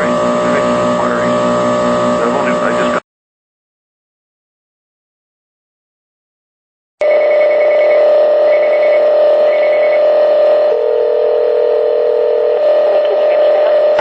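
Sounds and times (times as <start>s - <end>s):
loud steady hum: 0.0s - 3.0s, 7.0s - 14.0s
telephone ringing tone: 7.0s - 14.0s.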